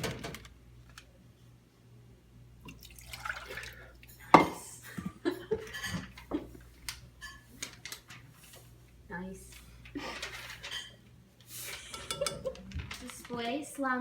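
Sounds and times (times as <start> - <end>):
water poured into a pan: 2.7 - 4.1
glass and kitchenware clinking: 4.0 - 6.5, 7.2 - 7.5, 10.5 - 11.0, 11.9 - 12.6.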